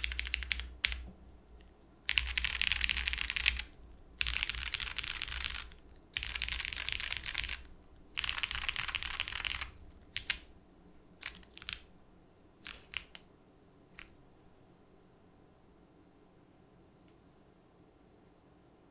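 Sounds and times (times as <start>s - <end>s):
mechanical keyboard keystrokes: 0.0s - 1.1s, 2.1s - 10.5s, 11.2s - 11.9s, 12.6s - 13.3s.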